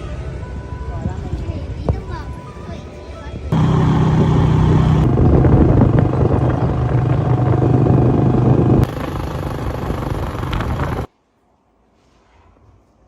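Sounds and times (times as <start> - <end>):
motorbike engine running: 3.5 - 11.1
loud rushing noise: 3.6 - 11.1.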